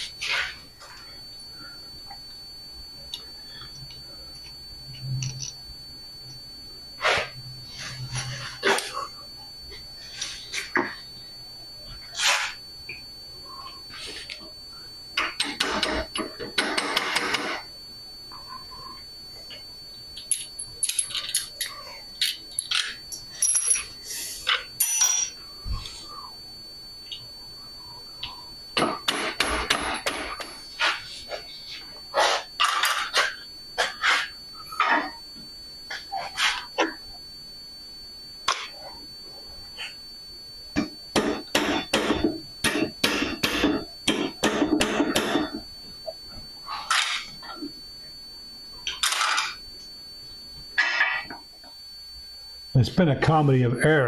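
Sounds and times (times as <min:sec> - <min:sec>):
metal parts and tools clinking: 0:05.2 - 0:05.6, 0:20.2 - 0:25.4, 0:48.9 - 0:49.6.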